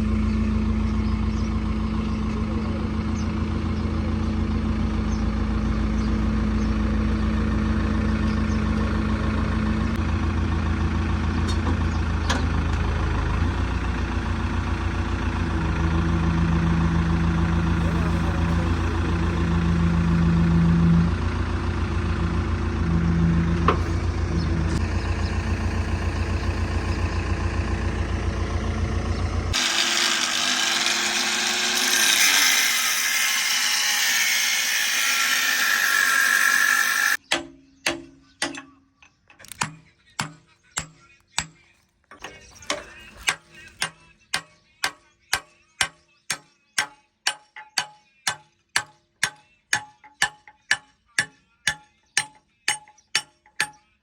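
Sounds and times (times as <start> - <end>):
diesel engine running: 0.0 - 37.2.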